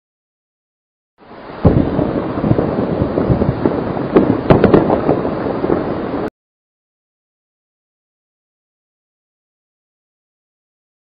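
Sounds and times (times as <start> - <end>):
avalanche rumbling: 1.2 - 6.3.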